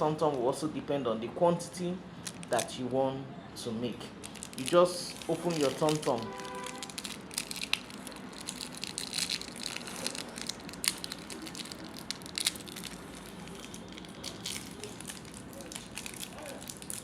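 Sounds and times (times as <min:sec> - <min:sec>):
plastic wrapper crinkling: 0:02.2 - 0:02.7, 0:04.2 - 0:17.0.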